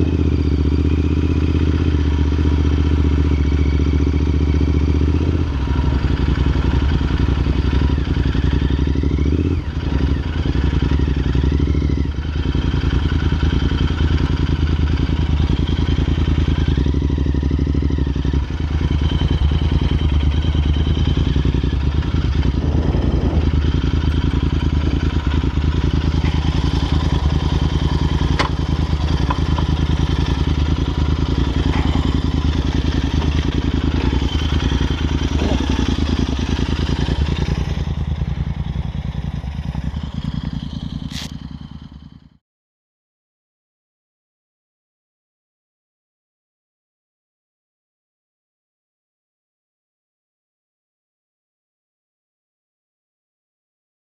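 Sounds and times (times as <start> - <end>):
motorcycle engine while riding: 0.0 - 42.4.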